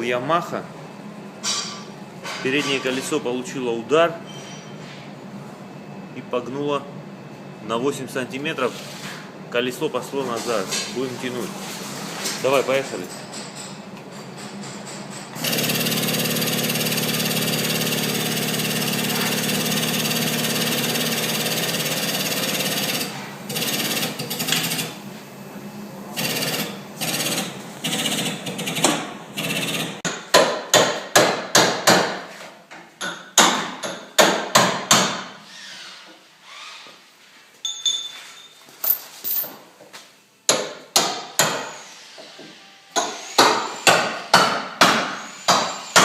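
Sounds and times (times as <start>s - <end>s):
steady machine noise: 15.4s - 25.1s, 26.0s - 30.0s.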